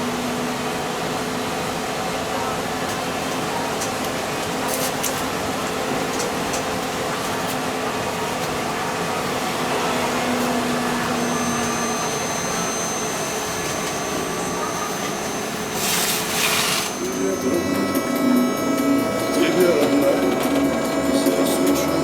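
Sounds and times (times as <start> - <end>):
trolleybus running rumble: 0.0 - 22.0
electric motor whine: 11.1 - 22.0.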